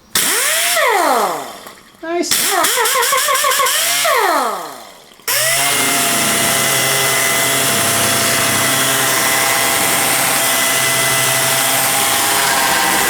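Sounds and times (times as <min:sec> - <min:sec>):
air sander whining: 0:00.0 - 0:13.0.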